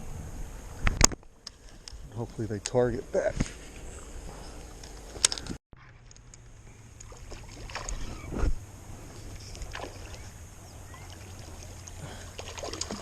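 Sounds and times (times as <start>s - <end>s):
rumble of wind and water: 0.0s - 13.0s
dull thump: 8.1s - 8.6s.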